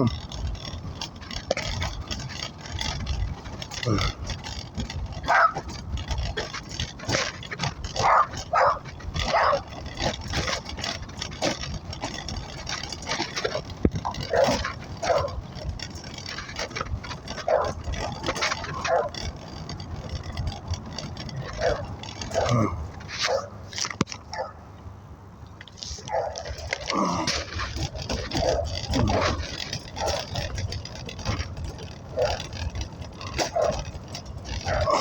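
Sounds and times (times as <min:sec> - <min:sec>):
dogs barking: 0:05.2 - 0:05.8, 0:07.8 - 0:10.0, 0:14.1 - 0:15.4, 0:17.3 - 0:19.3, 0:21.4 - 0:22.6, 0:23.2 - 0:23.6, 0:24.3 - 0:24.7, 0:26.0 - 0:26.7, 0:28.3 - 0:30.6, 0:32.1 - 0:35.0.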